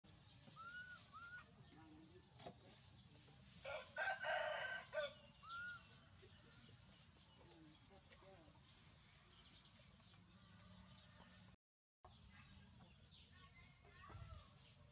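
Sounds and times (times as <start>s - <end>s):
rooster crowing: 3.7s - 5.6s.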